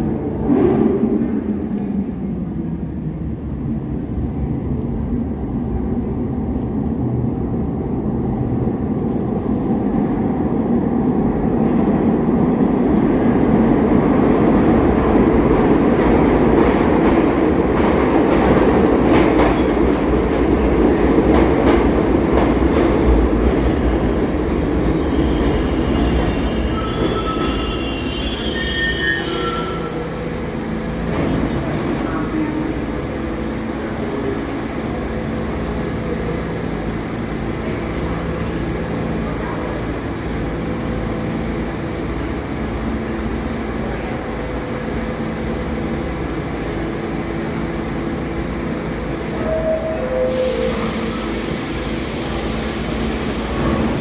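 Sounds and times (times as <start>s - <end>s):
subway train rumbling on rails: 0.0s - 54.0s
high-pitched wheel squeals: 25.9s - 30.0s.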